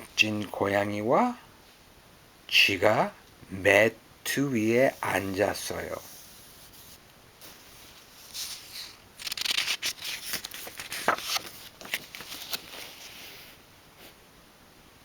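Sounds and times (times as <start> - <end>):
paper rustling: 6.0 - 13.5
book page clicks: 9.2 - 12.7.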